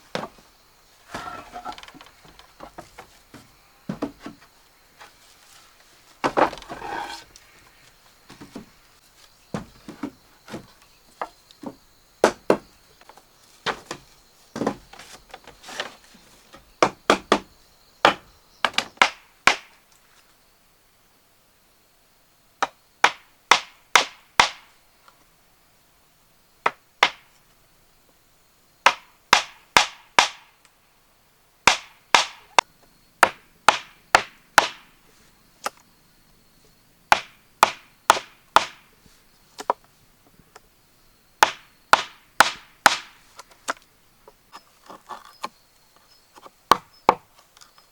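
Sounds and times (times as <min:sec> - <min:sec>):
hand tool striking wood: 0:00.1 - 0:00.4, 0:01.1 - 0:05.2, 0:06.2 - 0:07.3, 0:08.3 - 0:08.7, 0:09.5 - 0:12.6, 0:13.6 - 0:14.0, 0:14.6 - 0:15.9, 0:37.1 - 0:38.8, 0:41.4 - 0:43.8.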